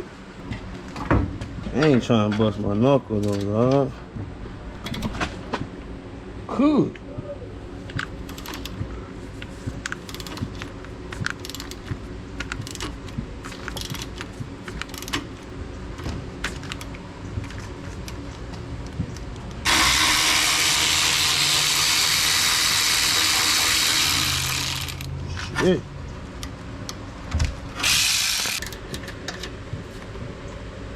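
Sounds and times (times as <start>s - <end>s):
ratchet wrench clicking: 11.3s - 11.8s, 14.8s - 15.2s, 19.7s - 25.1s, 27.8s - 28.8s.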